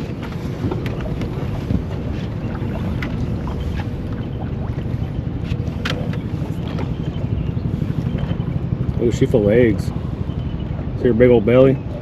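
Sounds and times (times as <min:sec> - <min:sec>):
wind rumbling on microphone: 0:00.0 - 0:12.0.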